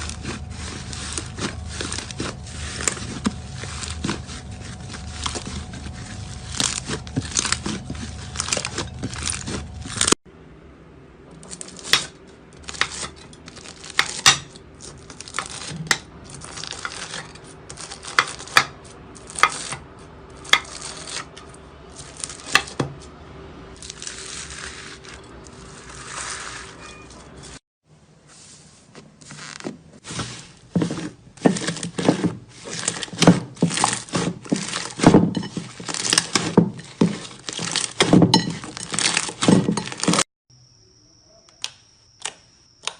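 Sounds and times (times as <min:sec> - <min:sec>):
slime crackling: 0:00.0 - 0:10.2.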